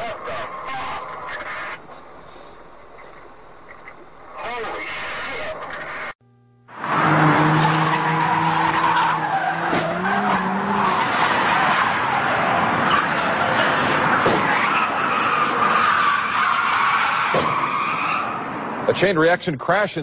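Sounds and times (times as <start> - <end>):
car tyres skidding: 0.0 - 3.3, 6.8 - 18.9
road noise: 0.0 - 20.0
low steady hum: 6.2 - 6.7.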